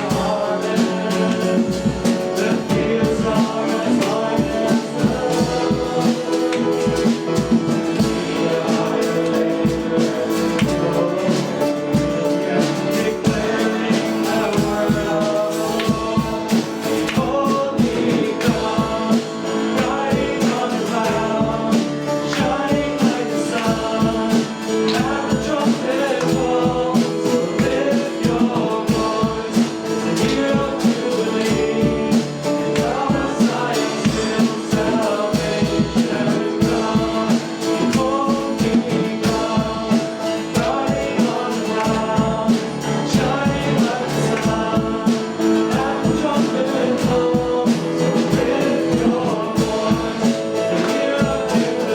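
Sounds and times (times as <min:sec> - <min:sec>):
guitar: 0:00.0 - 0:51.9
person singing: 0:00.0 - 0:51.9
steady drum beat: 0:00.0 - 0:51.9.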